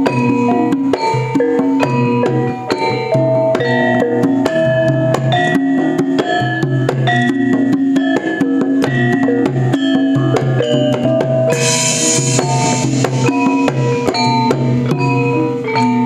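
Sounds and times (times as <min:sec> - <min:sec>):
drum strokes: 0:00.0 - 0:16.0
metallophone melody: 0:00.0 - 0:16.0
bright cymbal crash: 0:11.5 - 0:15.4.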